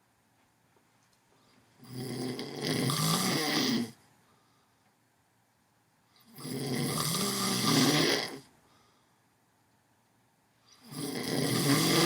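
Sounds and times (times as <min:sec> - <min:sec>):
man snoring loudly: 0:01.8 - 0:04.0, 0:06.3 - 0:08.5, 0:10.8 - 0:12.0.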